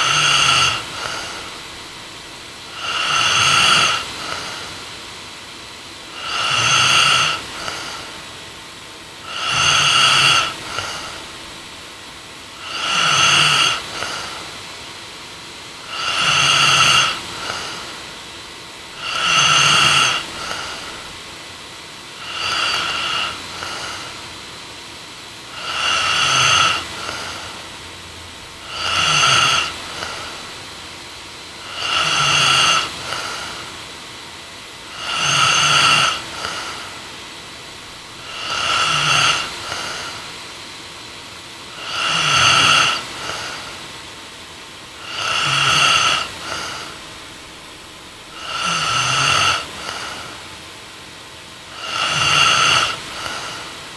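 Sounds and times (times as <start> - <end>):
woman snoring: 0.0 - 4.9, 6.1 - 8.3, 9.2 - 11.6, 12.5 - 14.6, 15.8 - 18.3, 18.9 - 21.4, 22.1 - 24.4, 25.4 - 33.8, 34.9 - 37.1, 37.8 - 40.4, 41.6 - 43.9, 44.9 - 50.6, 51.6 - 53.9.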